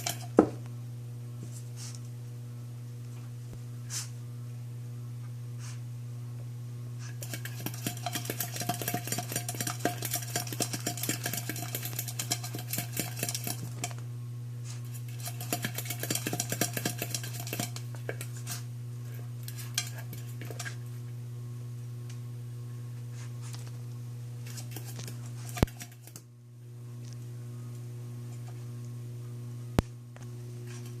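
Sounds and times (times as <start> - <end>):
food bowl clattering and rattling: 7.2 - 13.9, 15.2 - 17.8.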